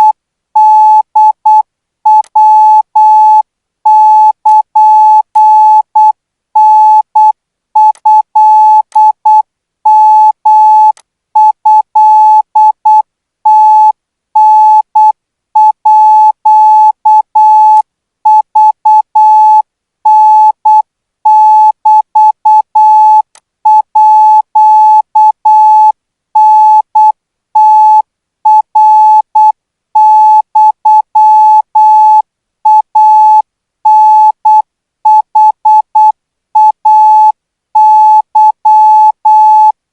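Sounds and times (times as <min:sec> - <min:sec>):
morse code beeps: 0:00.0 - 0:39.8.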